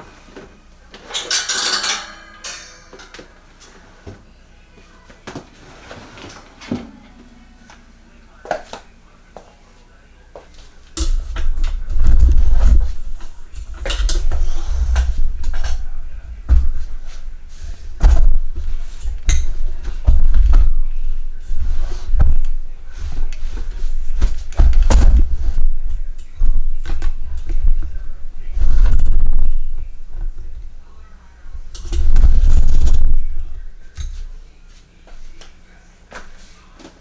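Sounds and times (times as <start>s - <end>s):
objects knocking and thudding: 10.9s - 30.7s.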